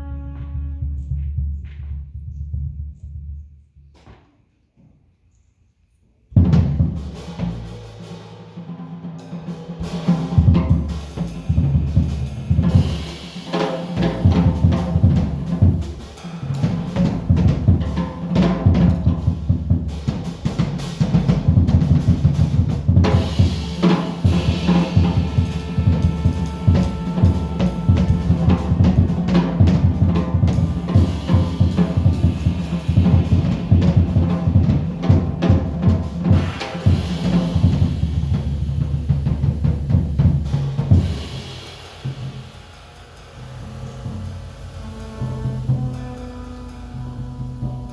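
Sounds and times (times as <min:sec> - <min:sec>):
drum-heavy music with bass line: 0:09.8 - 0:42.4.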